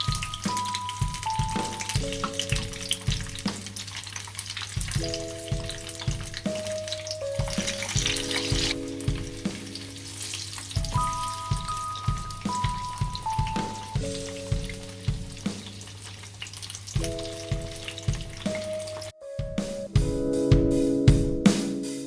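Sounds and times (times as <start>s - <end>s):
background music with beat: 0.0s - 3.8s, 4.8s - 15.9s, 17.0s - 22.0s
peppers sizzling in hot oil: 0.0s - 19.1s.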